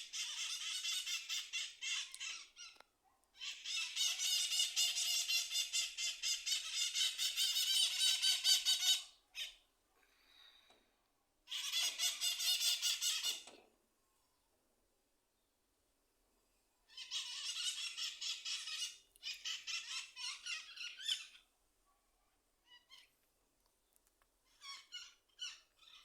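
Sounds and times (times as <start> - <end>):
parrots screeching: 0.0 - 2.8, 3.4 - 9.6, 11.5 - 13.5, 16.9 - 21.5, 22.6 - 23.1, 24.4 - 26.0.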